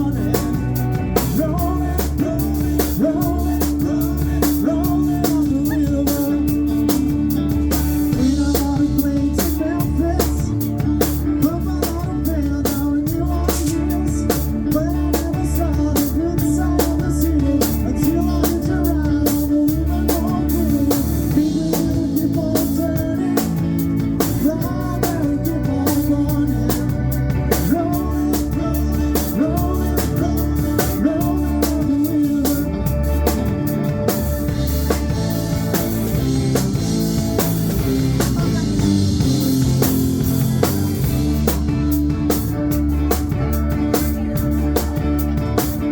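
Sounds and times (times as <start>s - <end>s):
bass guitar: 0.0s - 45.9s
drum kit: 0.0s - 45.9s
electric guitar: 0.0s - 45.9s.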